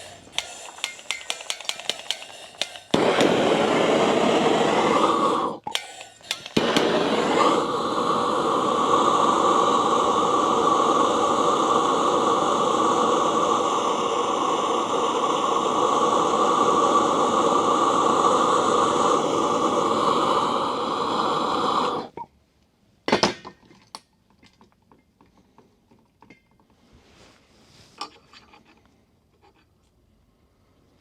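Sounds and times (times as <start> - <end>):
tools clicking and clattering: 0.0 - 3.2, 5.6 - 6.9
sharp metallic clank: 0.0 - 3.6, 5.7 - 7.2
torch hissing: 0.0 - 22.1.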